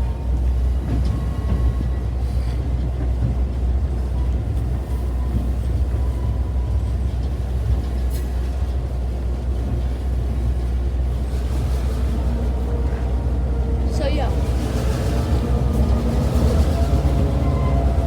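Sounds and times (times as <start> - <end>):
train rumbling along track: 0.0 - 18.0.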